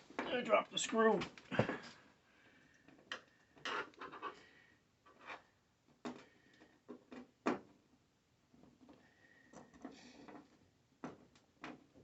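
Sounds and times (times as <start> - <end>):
scraping and rubbing: 3.6 - 4.5, 5.1 - 5.6.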